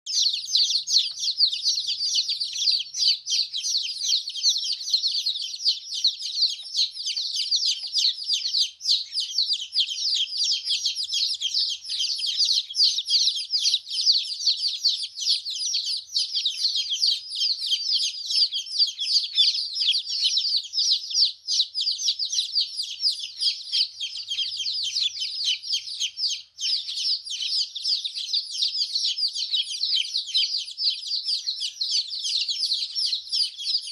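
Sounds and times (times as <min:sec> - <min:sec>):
chicks peeping: 0:00.0 - 0:33.9.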